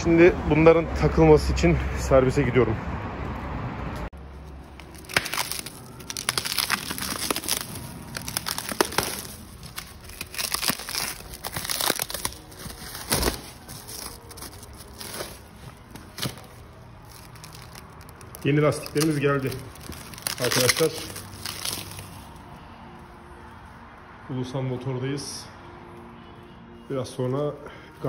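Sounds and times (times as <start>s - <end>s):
plastic wrapping crinkling: 4.2s - 22.5s.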